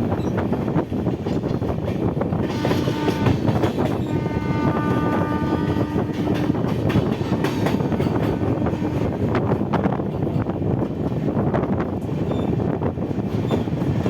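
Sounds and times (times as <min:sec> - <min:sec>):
rush of wind: 0:00.0 - 0:14.0
train wheels clattering on rails: 0:00.0 - 0:14.0
train horn chord: 0:02.4 - 0:03.5, 0:04.1 - 0:06.7, 0:07.3 - 0:09.2.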